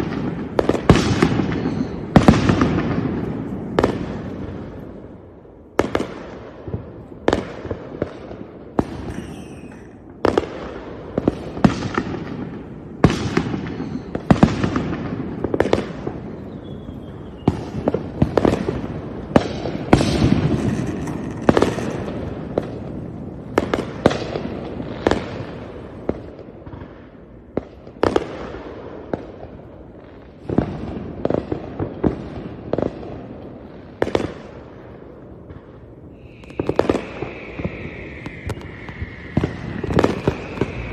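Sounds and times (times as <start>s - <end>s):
faint firework whistle: 0.0s - 4.4s, 8.8s - 26.4s, 36.0s - 40.9s
loud firework bangs: 0.0s - 29.6s, 30.4s - 40.9s
crackling rumble: 14.4s - 24.2s, 35.5s - 40.9s.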